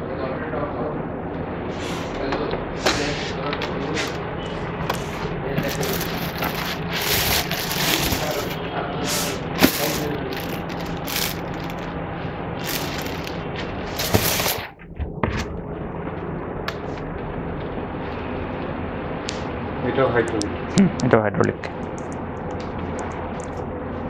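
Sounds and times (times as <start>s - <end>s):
steady low hum: 0.0s - 24.0s
rustling: 5.0s - 11.9s, 12.6s - 14.7s.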